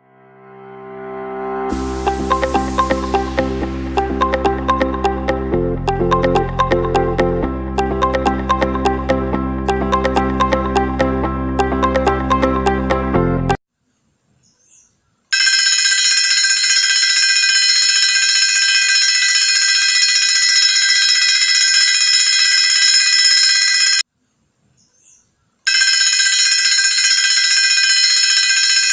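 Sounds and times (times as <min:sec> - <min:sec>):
high-pitched electronic alarm ring: 0:15.4 - 0:24.0, 0:25.7 - 0:28.9.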